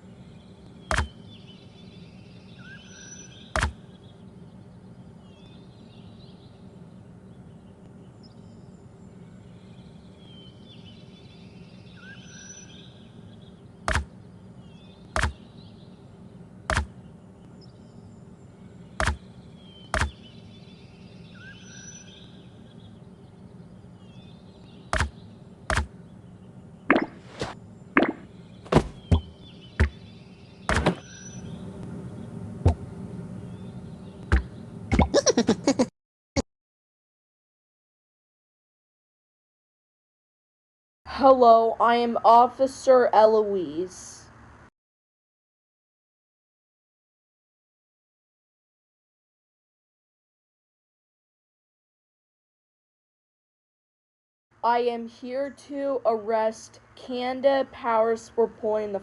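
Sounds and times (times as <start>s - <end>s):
steady low hum: 0.0s - 35.9s.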